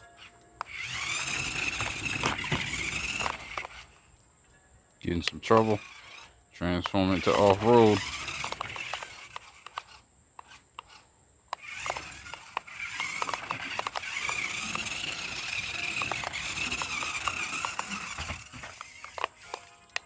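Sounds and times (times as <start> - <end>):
toy car electric motor whining: 0.0 - 4.2, 5.2 - 20.0
scattered clicks and ticks: 0.0 - 20.0.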